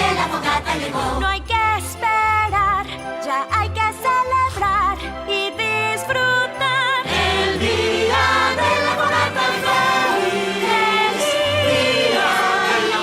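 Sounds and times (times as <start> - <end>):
choir singing festive song: 0.0 - 2.6, 5.6 - 13.0
orchestral accompaniment: 4.8 - 13.0.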